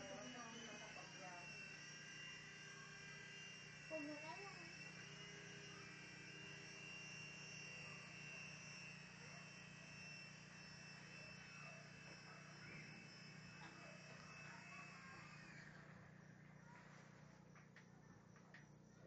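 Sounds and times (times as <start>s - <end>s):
toy helicopter motor whine: 0.0s - 19.0s.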